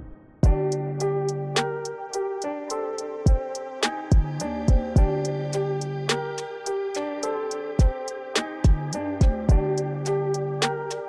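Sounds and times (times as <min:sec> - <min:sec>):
background music sustained chords: 0:00.0 - 0:11.0
low drum thumps: 0:08.7 - 0:09.7.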